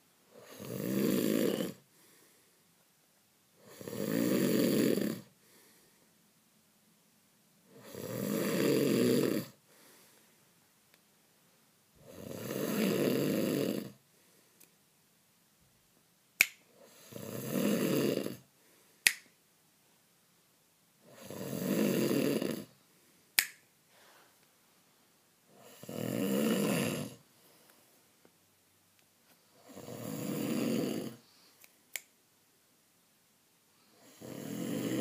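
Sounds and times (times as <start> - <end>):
person snoring: 0.3 - 1.9, 3.6 - 5.3, 7.7 - 9.6, 12.0 - 14.0, 16.8 - 18.5, 21.0 - 22.8, 25.5 - 27.3, 29.5 - 31.3, 33.9 - 35.0.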